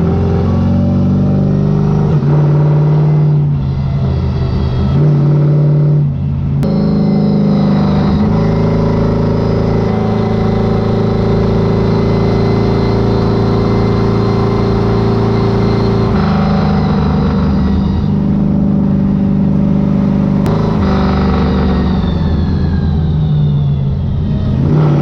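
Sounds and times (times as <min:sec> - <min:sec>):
car engine running loud: 0:00.0 - 0:25.0.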